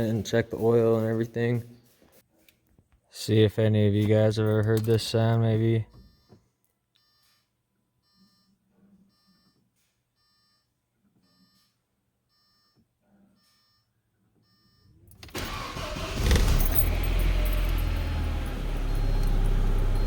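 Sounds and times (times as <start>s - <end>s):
faint electronic beeping: 7.0s - 15.0s
car engine starting and running: 15.1s - 20.0s.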